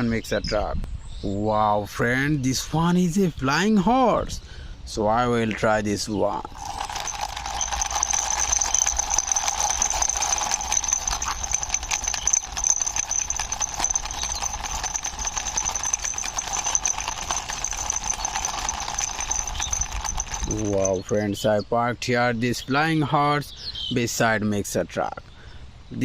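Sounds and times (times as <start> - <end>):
toy wheels rattling: 6.4 - 21.1.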